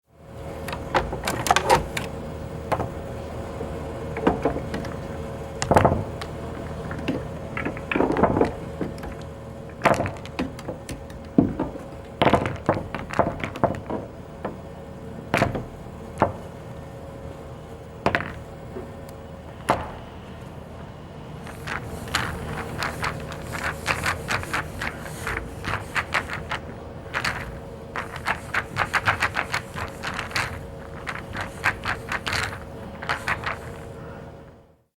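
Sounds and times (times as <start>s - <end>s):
pool balls rolling: 0.3s - 34.6s
pool balls clicking together: 0.6s - 3.0s, 4.1s - 16.8s, 18.0s - 20.5s, 21.4s - 34.0s.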